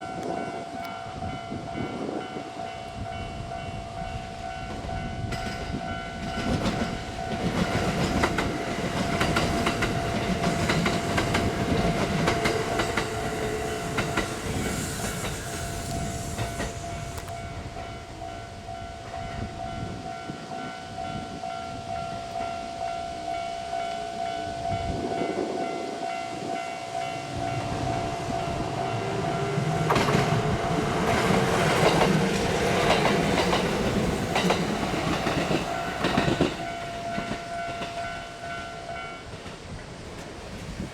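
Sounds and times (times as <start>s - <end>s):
train wheels clattering over rails: 4.7s - 17.9s, 26.8s - 40.9s.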